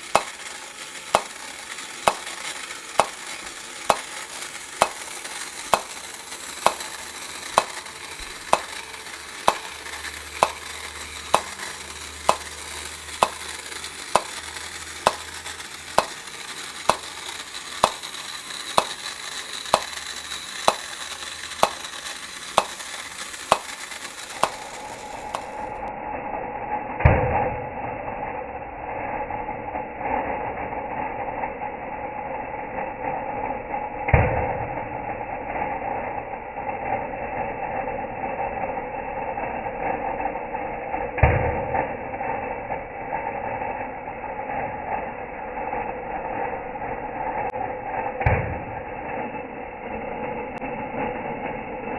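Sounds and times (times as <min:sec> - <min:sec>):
crackling rattle of bouncing balls: 0:00.0 - 0:25.9
sharp mechanical clicks: 0:00.0 - 0:25.9
toy motor hum: 0:00.0 - 0:25.9.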